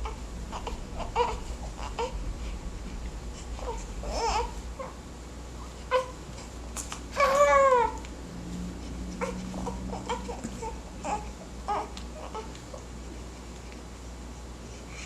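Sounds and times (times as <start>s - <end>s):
baby crying: 0.0s - 2.2s, 3.6s - 4.9s, 7.2s - 8.0s, 9.2s - 12.6s.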